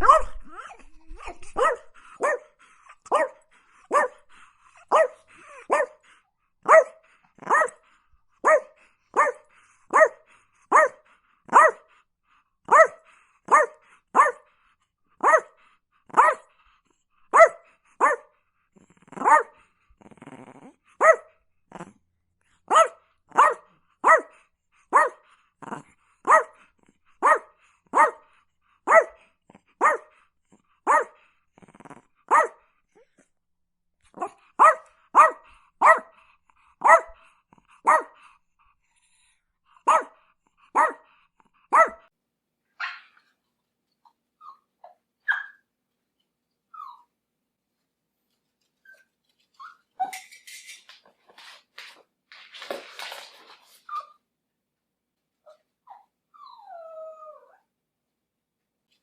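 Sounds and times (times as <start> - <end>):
small dog yapping: 0.0 - 2.4, 42.8 - 43.3, 44.4 - 45.6.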